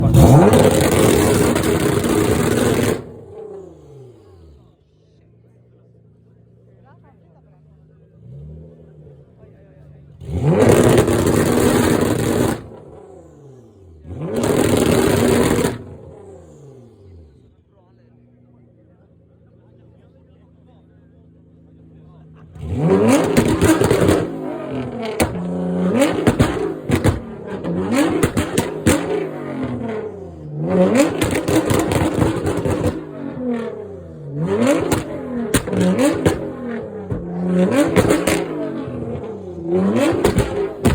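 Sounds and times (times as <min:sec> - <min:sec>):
exhaust pops and crackles: 0:00.0 - 0:03.2, 0:10.4 - 0:13.0, 0:14.2 - 0:16.1, 0:22.3 - 0:33.8, 0:34.4 - 0:40.9
car engine revving: 0:00.0 - 0:40.9.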